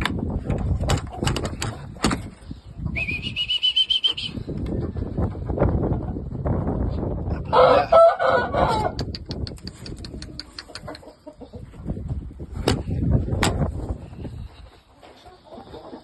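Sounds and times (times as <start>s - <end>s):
sharp clicks: 9.0s - 11.0s.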